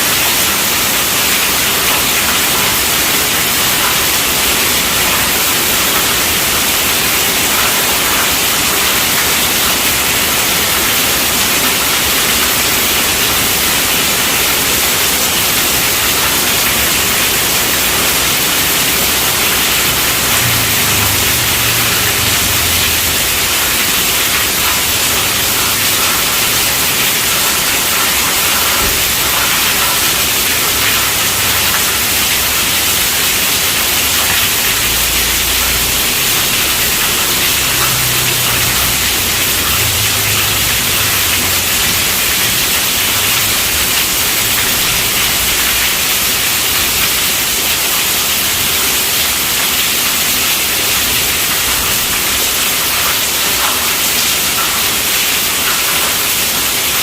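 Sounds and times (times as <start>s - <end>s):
steady rainfall: 0.0s - 57.0s.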